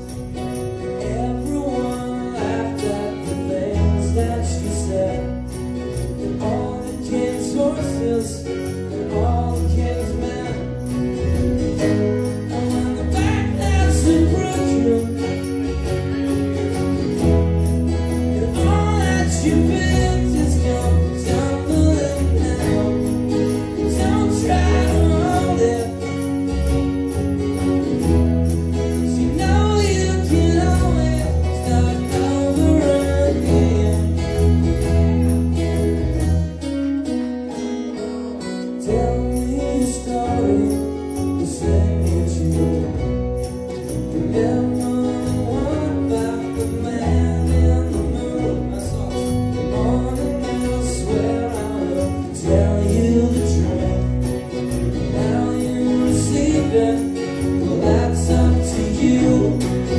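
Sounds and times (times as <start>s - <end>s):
live rock band playing: 0.0s - 59.9s
person singing: 12.4s - 15.6s, 18.3s - 26.5s, 29.1s - 34.7s, 44.0s - 59.9s.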